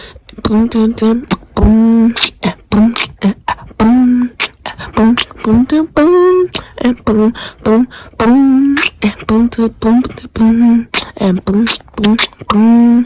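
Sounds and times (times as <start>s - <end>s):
percussive vocal hits: 1.2s - 5.9s, 6.5s - 8.0s.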